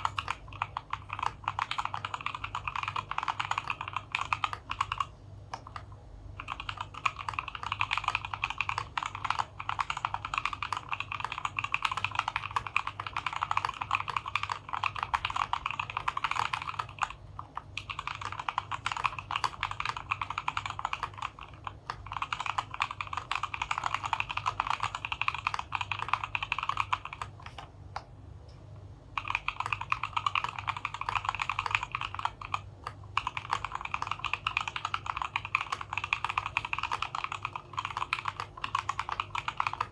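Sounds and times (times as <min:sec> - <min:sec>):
fast mechanical keyboard typing: 0:00.0 - 0:27.7, 0:29.1 - 0:39.9.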